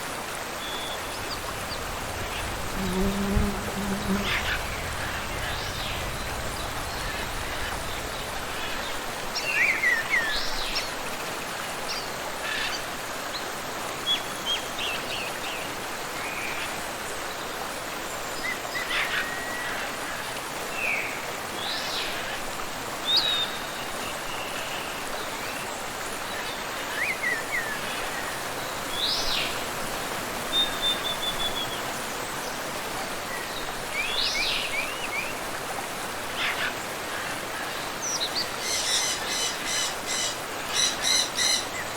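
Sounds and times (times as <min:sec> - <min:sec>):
flowing water: 0:00.0 - 0:41.9
birds chirping: 0:00.7 - 0:09.0.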